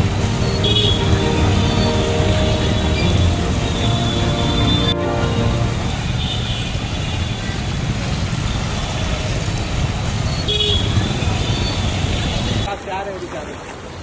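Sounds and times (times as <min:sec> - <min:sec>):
car horn toot: 0:00.0 - 0:07.2
passing vehicles rumbling: 0:00.0 - 0:12.7.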